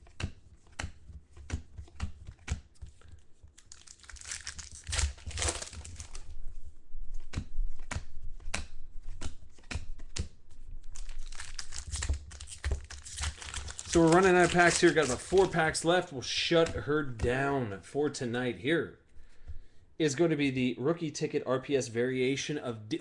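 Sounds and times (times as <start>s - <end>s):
cards clicking and snapping: 0.0s - 6.3s, 7.2s - 15.7s
wrapper crinkling and tearing: 3.6s - 6.3s, 10.9s - 15.8s.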